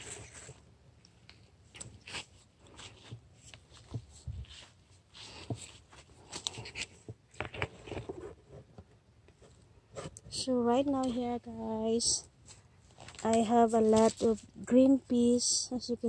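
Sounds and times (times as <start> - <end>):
plant leaves rustling: 0.0 - 6.9, 12.4 - 15.0.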